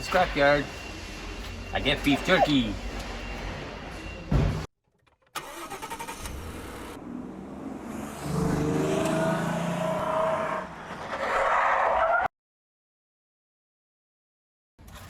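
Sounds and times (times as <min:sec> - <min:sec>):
car engine accelerating: 0:05.5 - 0:10.9.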